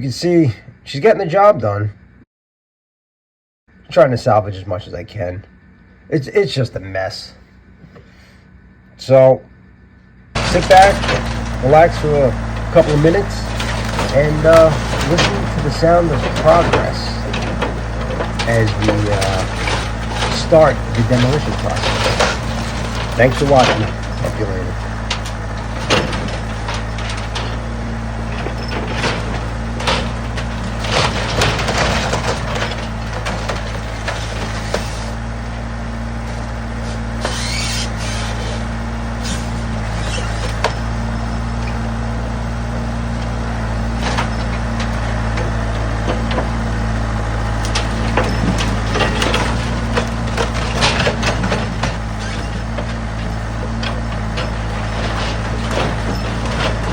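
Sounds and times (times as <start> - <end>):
backhoe engine running: 3.7 - 56.9
wooden boards cracking and crashing: 10.4 - 41.0, 43.0 - 56.9.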